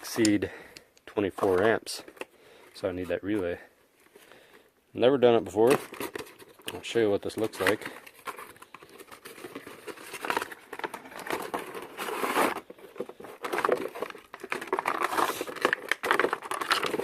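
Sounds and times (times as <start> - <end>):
packaging rustling: 5.5 - 17.0.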